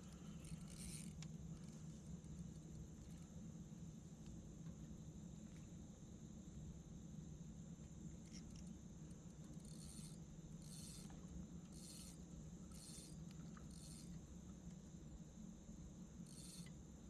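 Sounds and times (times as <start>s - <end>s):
raspy high insect chirp: 0.0s - 3.3s, 9.4s - 14.4s, 16.1s - 17.0s
high insect whine: 0.0s - 4.2s, 4.9s - 17.0s
faint low hum: 0.0s - 17.0s.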